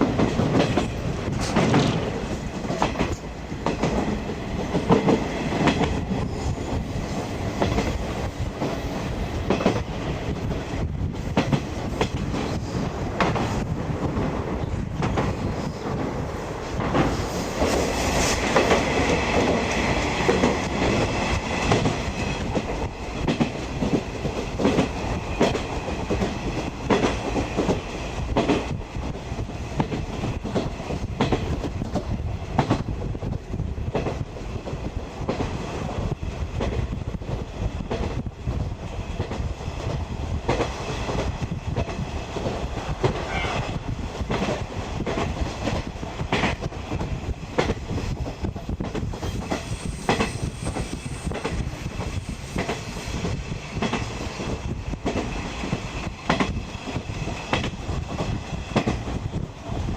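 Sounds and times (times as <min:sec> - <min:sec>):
steel wheels rumbling on rails: 0:00.0 - 0:59.9
high squeal: 0:49.5 - 0:51.4.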